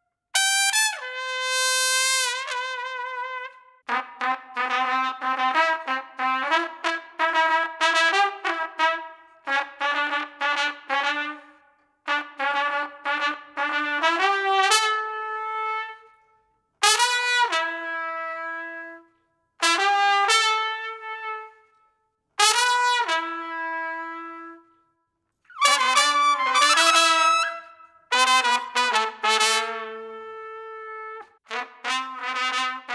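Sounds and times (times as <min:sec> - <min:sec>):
plastic trumpet playing: 0:00.4 - 0:16.2, 0:16.8 - 0:21.8, 0:22.4 - 0:24.7, 0:25.5 - 0:32.9.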